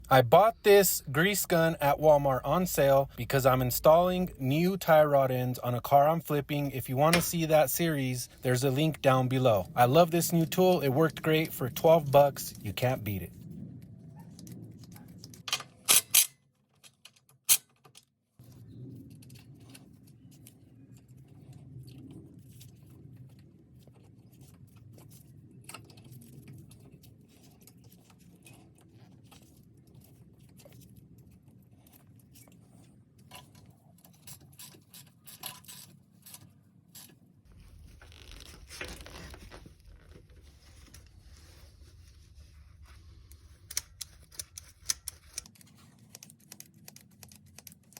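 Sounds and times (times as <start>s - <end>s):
low steady hum: 0.0s - 16.3s, 37.0s - 47.9s
rustling: 18.4s - 47.9s.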